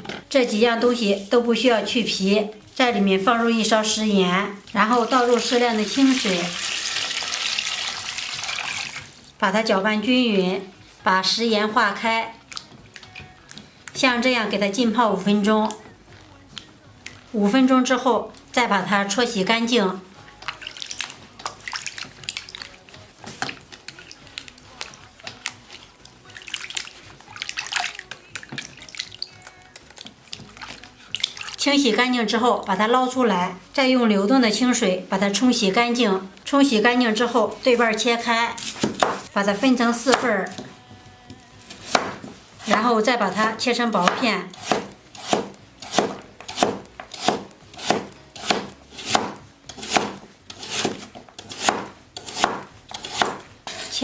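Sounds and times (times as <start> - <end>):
hands washing fruit in water: 2.7 - 9.3, 20.3 - 32.0
water splashing and dripping: 4.6 - 9.3, 20.4 - 31.8
knife slicing radish: 38.6 - 40.7, 41.7 - 42.9, 44.0 - 54.0.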